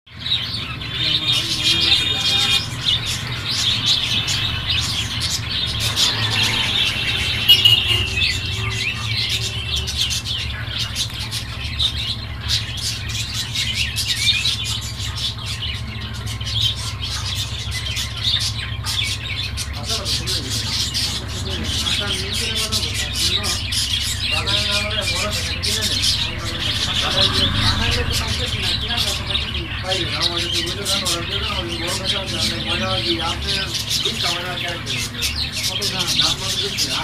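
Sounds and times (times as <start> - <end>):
small birds chirping and trilling: 0.1 - 37.0
steady low rumble: 14.6 - 30.4.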